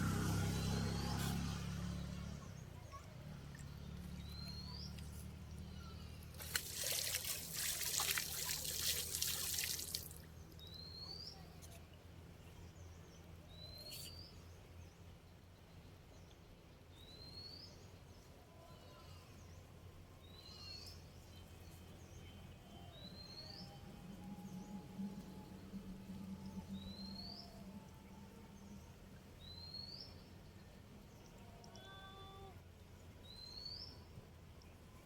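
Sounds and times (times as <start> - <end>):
water splashing and trickling: 3.0 - 10.6
low steady hum: 20.9 - 35.0.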